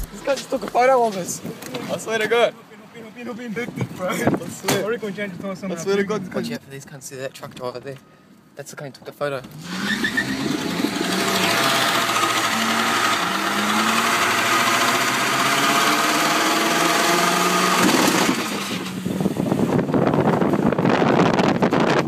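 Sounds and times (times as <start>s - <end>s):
car engine revving hard: 9.5s - 20.0s
rough rushing noise: 9.5s - 22.0s.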